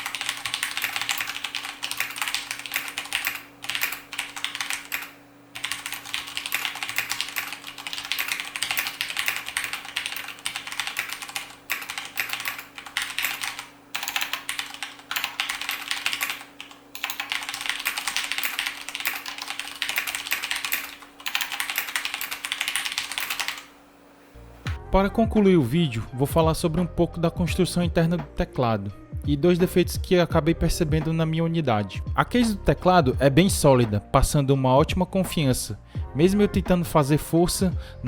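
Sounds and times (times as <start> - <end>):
typing on a mechanical keyboard: 0.0 - 23.7.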